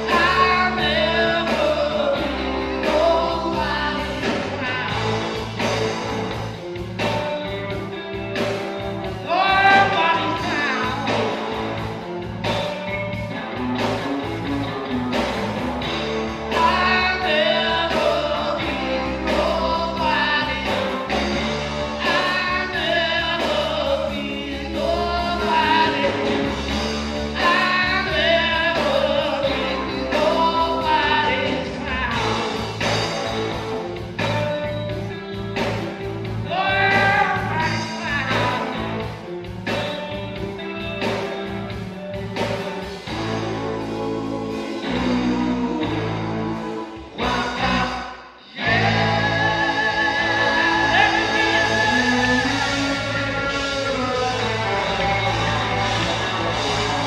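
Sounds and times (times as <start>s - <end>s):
person singing: 0.0s - 5.7s, 9.2s - 11.5s, 16.4s - 32.6s, 36.4s - 39.0s, 43.1s - 57.0s
band playing a song: 0.0s - 57.0s.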